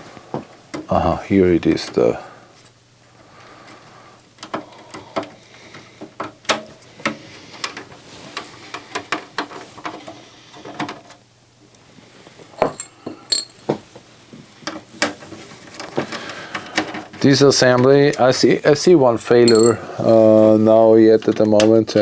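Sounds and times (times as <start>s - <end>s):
metal parts clicking and clinking: 12.6s - 13.6s, 19.4s - 19.8s
short metallic ring: 19.5s - 19.8s.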